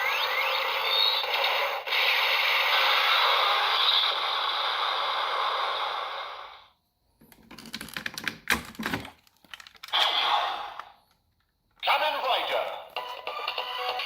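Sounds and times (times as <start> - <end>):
toy hissing sound effect: 0.0 - 6.7.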